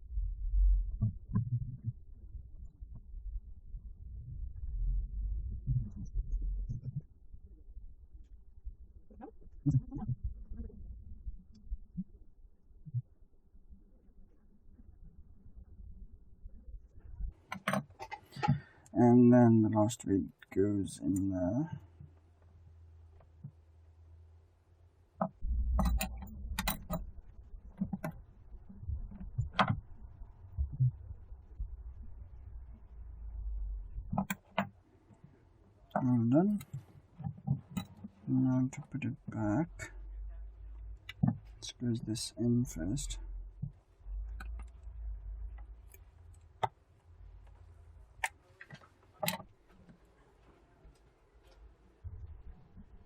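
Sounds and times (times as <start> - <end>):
low handling rumble: 0.0 - 17.4, 25.3 - 36.7, 37.7 - 48.3, 51.5 - 53.0
phone and tools clicking: 25.2 - 27.0, 48.2 - 49.5
low bumping handling noise: 25.2 - 34.8, 52.1 - 53.0.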